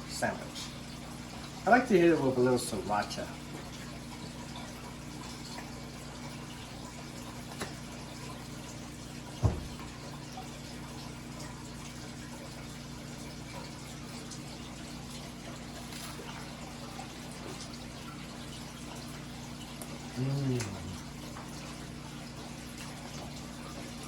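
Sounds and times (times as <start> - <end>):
kitchen room hum and hiss: 0.0 - 24.0
sharp thump: 9.4 - 9.8.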